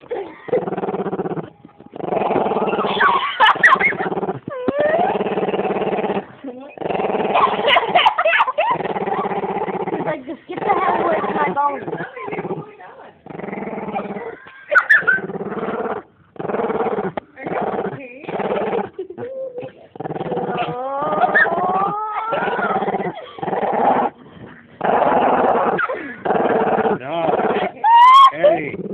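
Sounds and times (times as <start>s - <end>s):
dog growling: 0.0s - 28.9s
dog whining: 1.4s - 5.7s, 13.9s - 15.7s, 18.4s - 24.1s, 27.5s - 28.7s.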